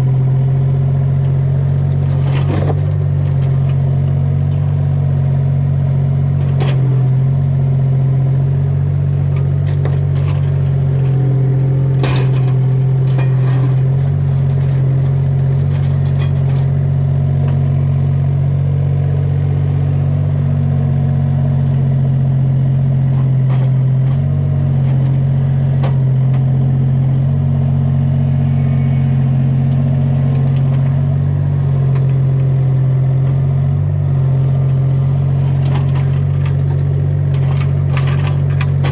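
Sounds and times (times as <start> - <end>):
excavator diesel engine running: 0.0 - 38.9
sharp knocks and clatter: 2.0 - 3.8, 9.2 - 16.8, 23.1 - 26.5, 35.2 - 38.9.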